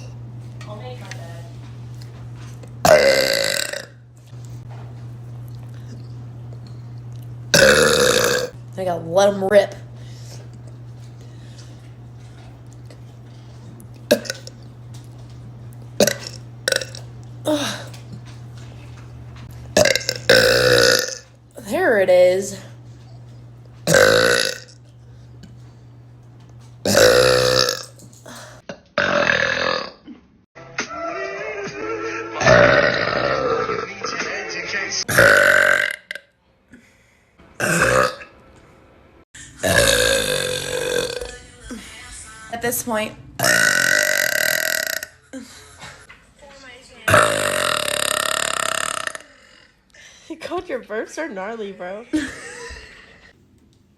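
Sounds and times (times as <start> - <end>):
woman burping: 2.8 - 4.0, 7.5 - 8.6, 14.1 - 14.6, 16.0 - 18.0, 19.8 - 21.2, 23.9 - 24.8, 26.8 - 30.3, 32.4 - 33.9, 35.1 - 36.3, 37.6 - 38.3, 39.6 - 41.3, 43.4 - 45.5, 47.1 - 49.8.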